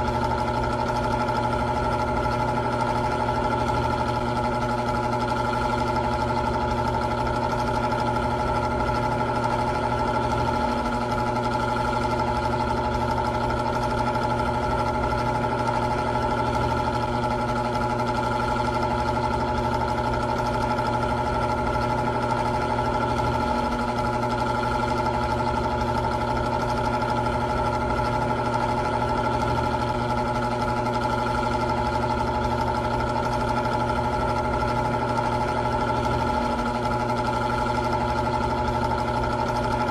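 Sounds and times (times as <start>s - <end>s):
electric fan motor hum: 0.0s - 39.9s.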